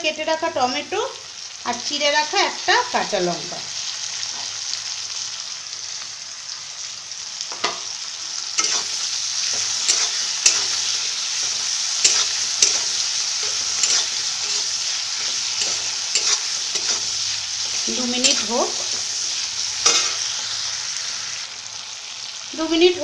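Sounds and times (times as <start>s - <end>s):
vegetables sizzling in oil: 0.0s - 23.0s
spatula scraping a pan: 8.5s - 20.6s.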